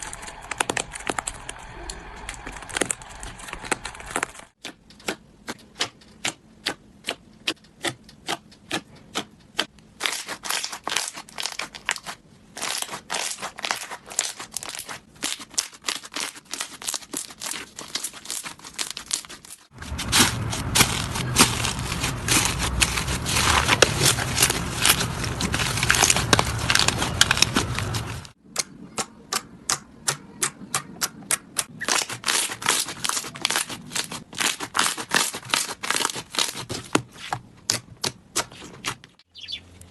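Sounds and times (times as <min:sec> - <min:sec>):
slime popping and crackling: 0:10.0 - 0:28.4, 0:31.7 - 0:36.7.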